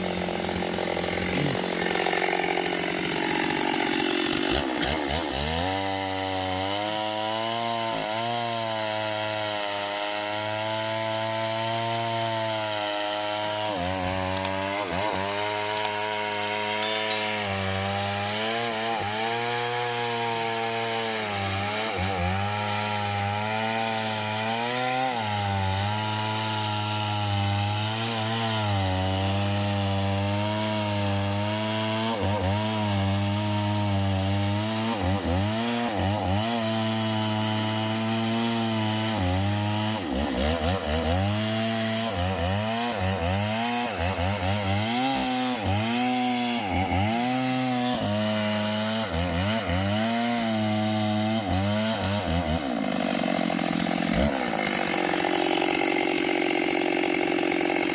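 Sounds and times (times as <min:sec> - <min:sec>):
chainsaw cutting wood: 0:00.0 - 0:57.9.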